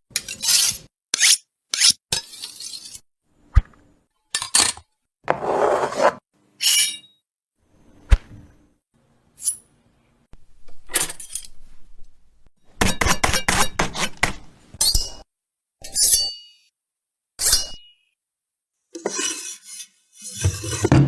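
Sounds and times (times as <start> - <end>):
knife blade scrape: 0.2 - 3.0, 5.3 - 7.1, 9.4 - 9.7, 12.8 - 15.2, 17.4 - 17.9, 19.0 - 20.9.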